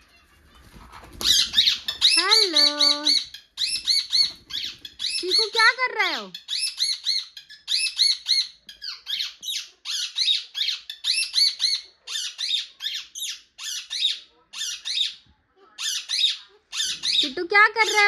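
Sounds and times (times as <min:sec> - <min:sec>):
parrot high-pitched calls: 0:01.2 - 0:15.2.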